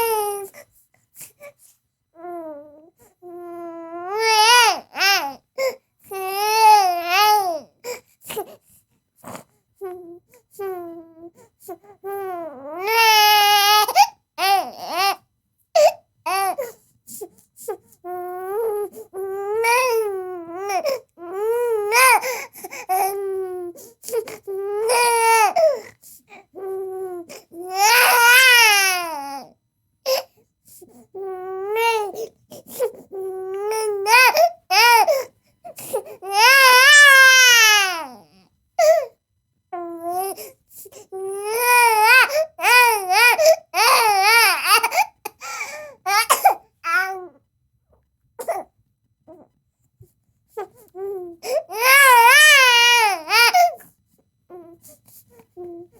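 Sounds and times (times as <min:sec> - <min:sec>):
baby crying: 0:00.0 - 0:00.6, 0:02.2 - 0:08.5, 0:09.3 - 0:15.2, 0:15.8 - 0:16.8, 0:17.6 - 0:29.5, 0:31.0 - 0:39.1, 0:39.8 - 0:47.4, 0:50.6 - 0:53.8.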